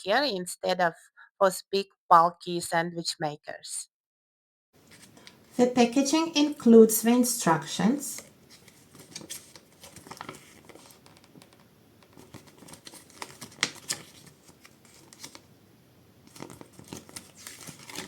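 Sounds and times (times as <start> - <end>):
packaging crinkling and rustling: 8.2 - 15.5, 16.2 - 18.0.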